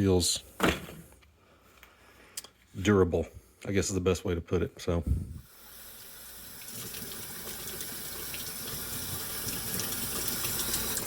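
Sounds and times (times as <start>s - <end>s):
water running and splashing: 5.5s - 11.0s.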